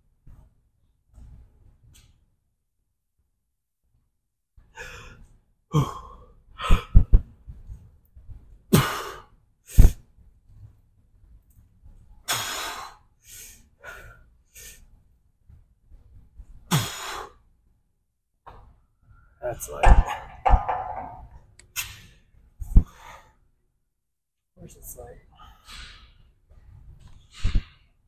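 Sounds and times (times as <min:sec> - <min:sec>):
low thumps: 0:19.8 - 0:21.4.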